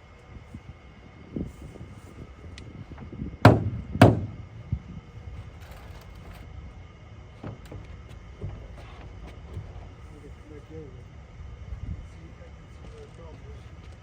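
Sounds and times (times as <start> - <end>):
rubber mallet thuds: 3.5 - 4.4.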